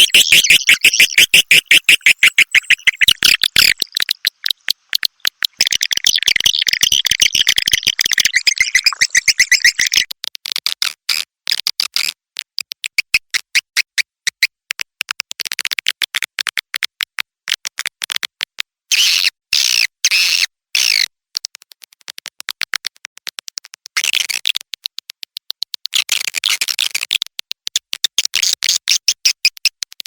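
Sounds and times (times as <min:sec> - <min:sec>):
buzzy twittering bird chirps: 0:00.0 - 0:10.1
rapid dry clicks: 0:00.1 - 0:08.4, 0:21.4 - 0:28.1.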